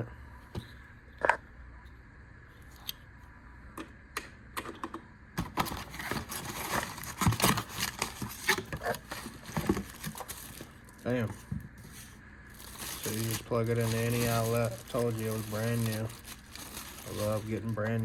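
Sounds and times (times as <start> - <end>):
packaging crinkling and tearing: 5.4 - 18.0.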